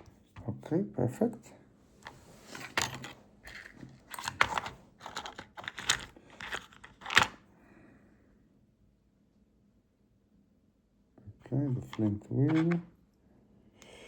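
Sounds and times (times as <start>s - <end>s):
metal parts clicking and scraping: 2.0s - 7.3s, 11.8s - 12.8s.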